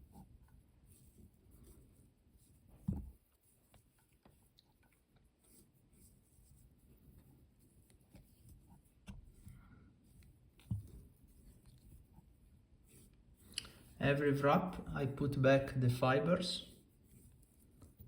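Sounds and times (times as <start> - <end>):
faint scratches and clicks: 0.0 - 14.0.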